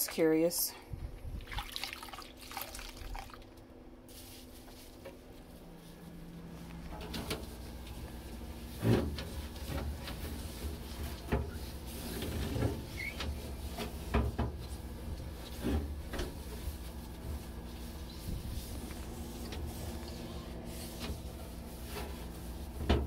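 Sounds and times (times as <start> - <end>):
steady low rumble: 0.7 - 1.5
refrigerator shelves clattering: 6.7 - 23.0.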